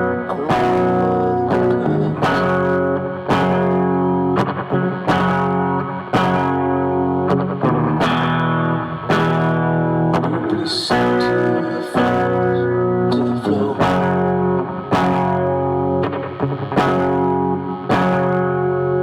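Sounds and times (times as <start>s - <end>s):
guitar chords ringing: 0.0s - 19.0s.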